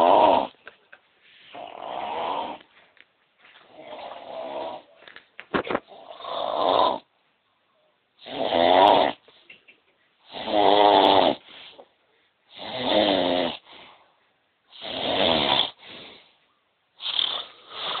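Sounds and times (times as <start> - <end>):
loud snoring: 0.0 - 0.6, 1.5 - 2.7, 3.7 - 5.0, 5.9 - 7.1, 8.2 - 9.2, 10.2 - 11.8, 12.5 - 13.8, 14.7 - 16.2, 17.0 - 18.0.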